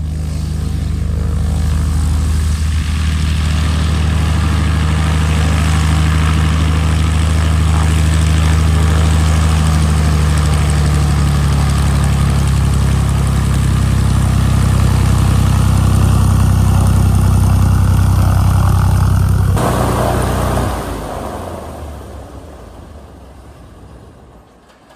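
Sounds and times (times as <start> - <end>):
airplane engine running: 0.0 - 24.7.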